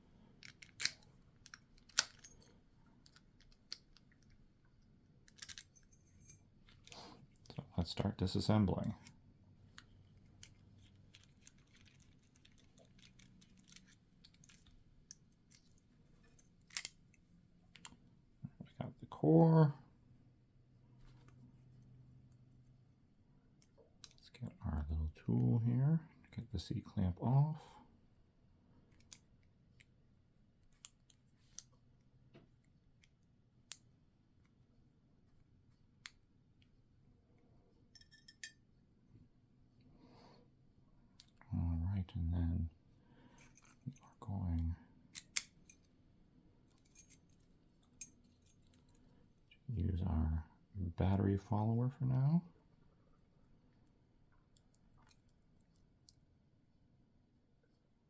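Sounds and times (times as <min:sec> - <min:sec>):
padlock metal clicks: 0:00.4 - 0:04.4, 0:45.1 - 0:45.9.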